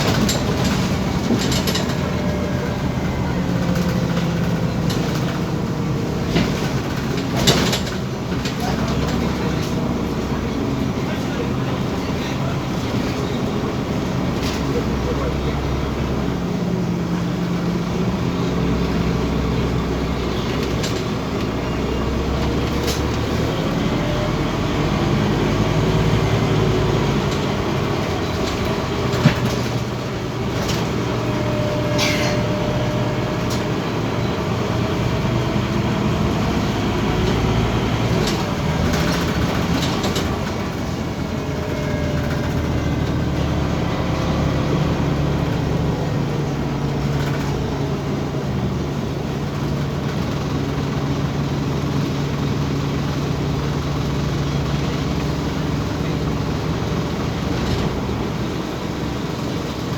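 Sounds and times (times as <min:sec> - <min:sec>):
bus diesel engine running: 0:00.0 - 0:59.9.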